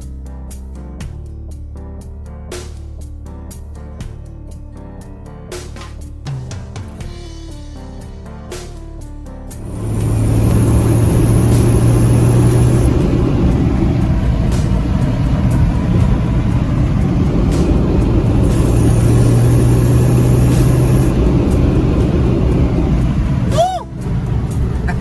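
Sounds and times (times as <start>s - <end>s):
car engine drone: 9.6s - 25.0s
road and wind noise: 9.6s - 25.0s.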